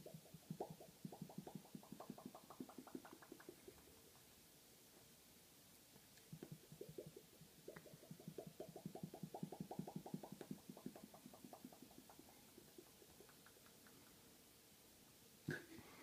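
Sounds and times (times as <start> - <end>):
man making hollow popping noise: 0.0 - 4.3, 6.2 - 14.2, 15.4 - 15.8.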